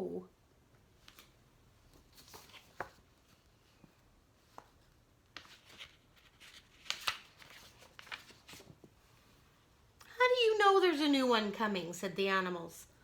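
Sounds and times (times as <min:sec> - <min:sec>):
paper pages turning: 0:01.0 - 0:03.5, 0:04.4 - 0:09.0.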